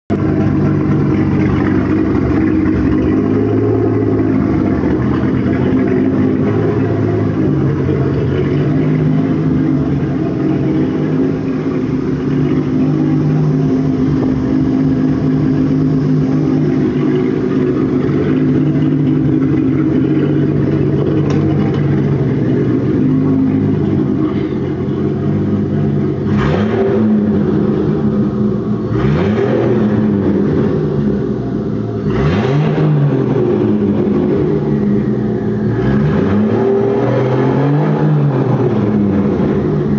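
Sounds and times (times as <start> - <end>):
car engine idling: 0.1 - 39.9
car engine revving: 0.1 - 39.9.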